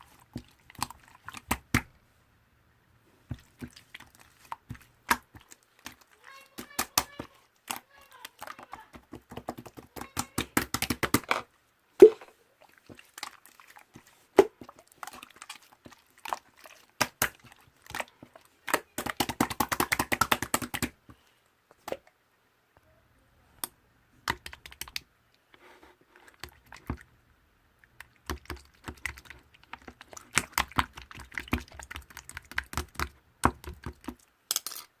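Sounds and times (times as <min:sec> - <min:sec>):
slime squishing with clicks and pops: 0:00.0 - 0:02.0, 0:03.3 - 0:11.3, 0:12.8 - 0:21.0, 0:23.6 - 0:25.1, 0:27.7 - 0:34.3.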